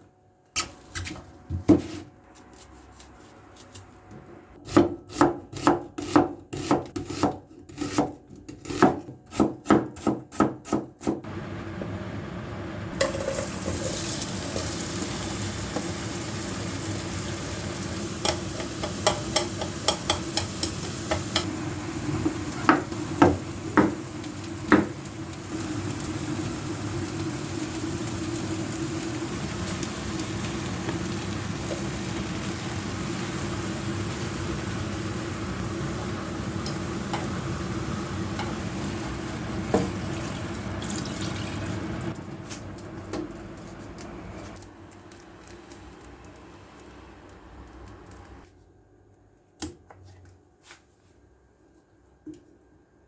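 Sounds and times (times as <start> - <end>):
knife chopping on wooden board: 4.6 - 11.2.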